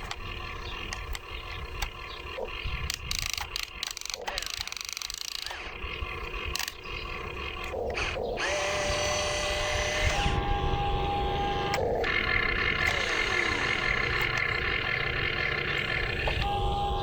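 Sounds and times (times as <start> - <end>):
electric motors whining: 0.0 - 17.0.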